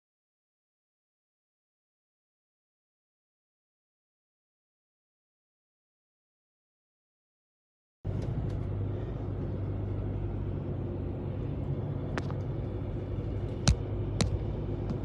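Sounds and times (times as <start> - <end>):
constant low hum: 8.1 - 15.0
low rumble: 8.1 - 15.0.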